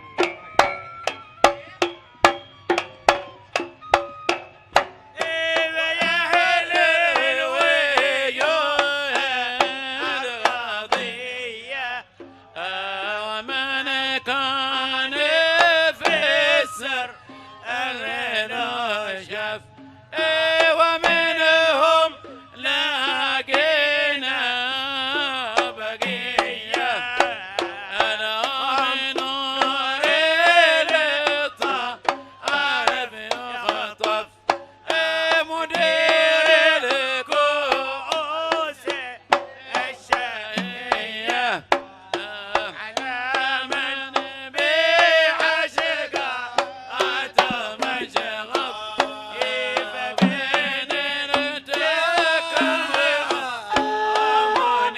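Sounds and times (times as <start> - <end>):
band playing: 0.0 - 11.1, 14.1 - 24.1, 47.0 - 54.9
hand drums beat: 0.0 - 54.9
man singing: 5.2 - 54.9.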